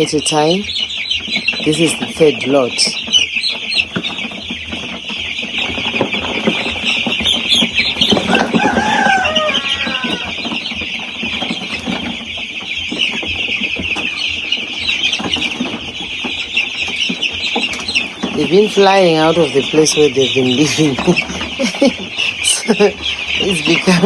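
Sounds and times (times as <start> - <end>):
chicks peeping: 0.0 - 24.0
louder falling chick calls: 5.2 - 10.9.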